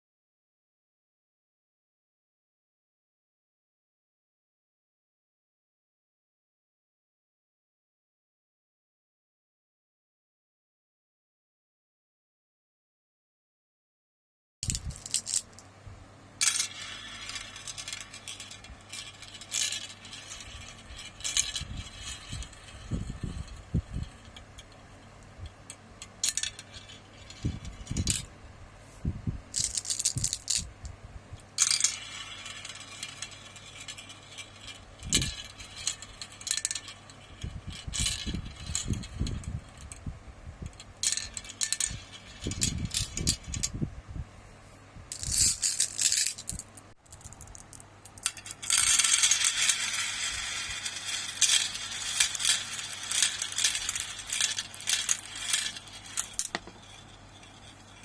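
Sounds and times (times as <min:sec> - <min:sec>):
marbles rattling along track: 0:14.6 - 0:15.6, 0:16.4 - 0:28.3, 0:29.5 - 0:30.8, 0:31.4 - 0:40.0, 0:40.7 - 0:43.8, 0:45.1 - 0:58.0.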